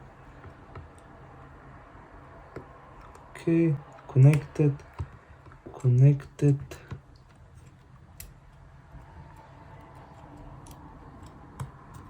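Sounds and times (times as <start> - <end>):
faint room hum: 0.0 - 12.0
small tools clicking and tapping: 9.2 - 12.0.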